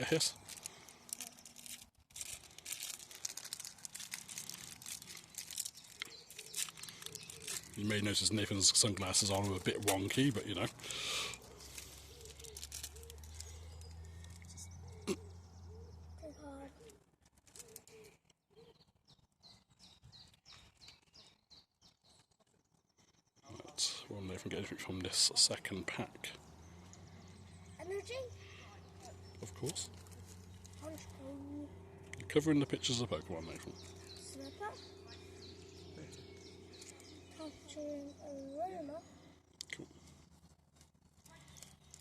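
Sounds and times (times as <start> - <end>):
foil wrapper crinkling and tearing: 0.0 - 14.7, 17.2 - 18.2, 29.5 - 31.2, 40.4 - 42.0
faint high bird chirps: 5.1 - 9.1, 11.9 - 24.7, 26.5 - 40.2
light clicks and rustles: 16.8 - 18.4.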